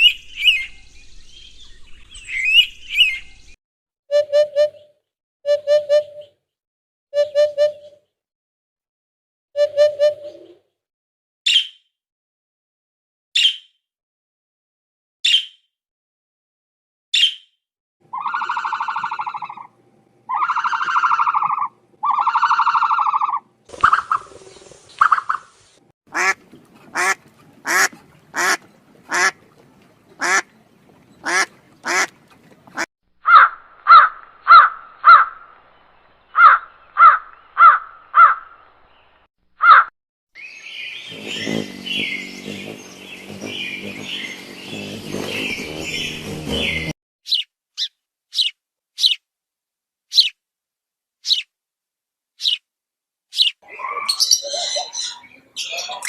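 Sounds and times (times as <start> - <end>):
high bird chirps: 0.0 - 3.6, 17.2 - 19.7, 40.4 - 49.2, 50.1 - 50.4, 51.2 - 51.5, 52.4 - 52.6, 53.3 - 56.0
long nasal bird calls: 18.1 - 19.7, 20.3 - 49.2, 50.1 - 50.4, 51.2 - 51.5, 52.4 - 52.6
short clipped bird calls: 36.3 - 49.2, 50.1 - 50.4, 51.2 - 51.5, 52.4 - 52.6, 53.3 - 56.0
sharp evenly spaced bird notes: 40.4 - 49.2, 53.4 - 56.0.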